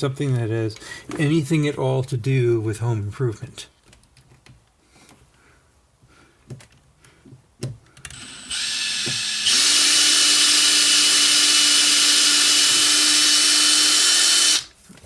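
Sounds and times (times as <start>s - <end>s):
electric drill motor running: 8.1s - 14.7s.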